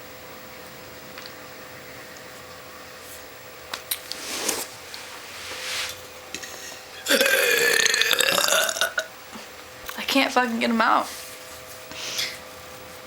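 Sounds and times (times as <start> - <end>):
woman belching: 7.0 - 9.1.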